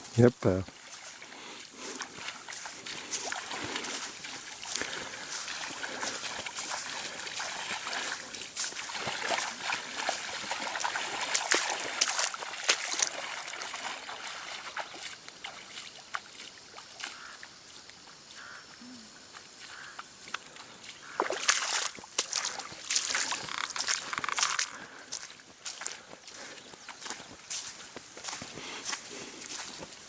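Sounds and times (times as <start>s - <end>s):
paddle splashing in water: 0.7s - 17.4s, 20.5s - 25.8s
water dribbling off paddle: 2.1s - 15.8s, 21.2s - 24.8s.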